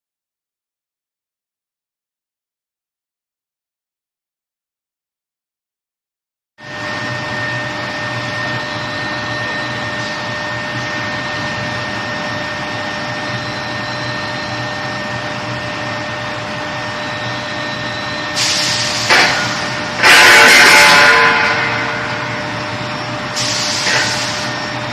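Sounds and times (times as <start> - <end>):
machine high tone and hum: 6.6 - 24.9.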